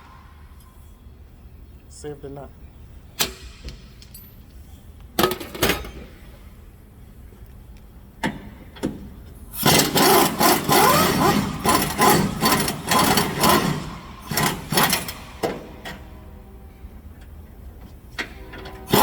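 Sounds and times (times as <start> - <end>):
power wrench bursts: 9.6 - 15.7.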